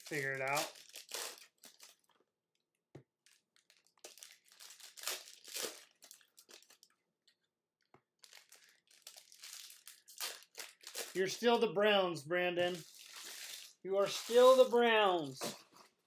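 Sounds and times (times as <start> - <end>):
plastic wrapping crinkling and tearing: 0.0 - 2.1, 3.2 - 6.9, 8.2 - 11.2, 12.7 - 14.7.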